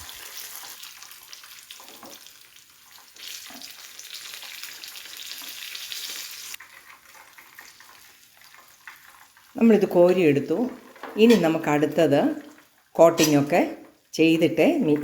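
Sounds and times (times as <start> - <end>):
hot oil sizzling and crackling: 0.0 - 15.0.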